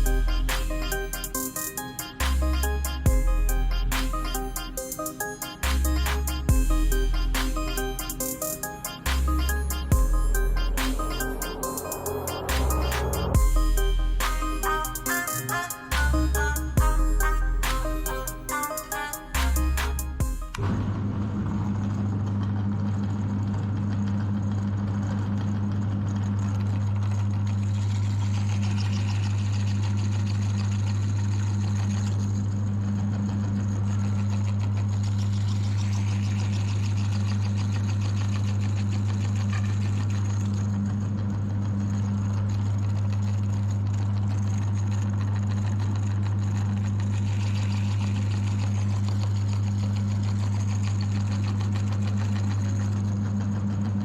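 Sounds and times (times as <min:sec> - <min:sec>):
electric meat grinder humming: 0:41.7 - 0:54.0.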